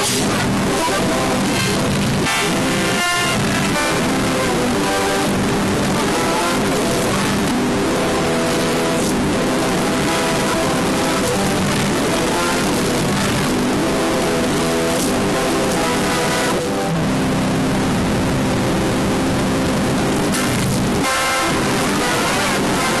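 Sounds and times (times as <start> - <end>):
loud distorted hiss: 0.0 - 23.0
held chord-like tones: 0.6 - 23.0.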